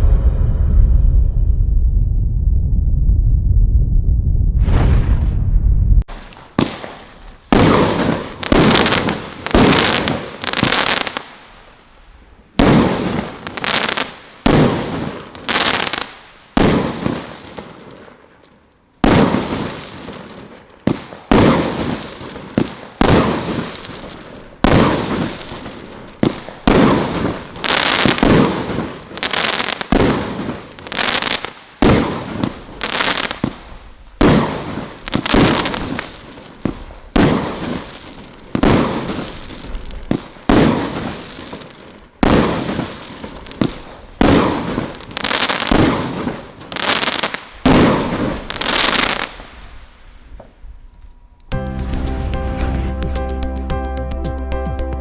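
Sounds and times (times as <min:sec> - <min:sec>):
firework barrage launches and bursts: 0:04.5 - 0:11.7, 0:19.0 - 0:50.5, 0:51.5 - 0:53.6
firework crackling: 0:04.6 - 0:11.7, 0:19.0 - 0:50.3, 0:51.5 - 0:53.7.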